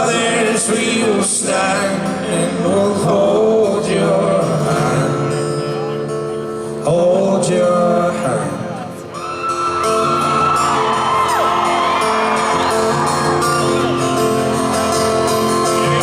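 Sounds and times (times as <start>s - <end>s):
men singing in harmony: 0.0s - 5.4s
acoustic guitar: 0.0s - 16.0s.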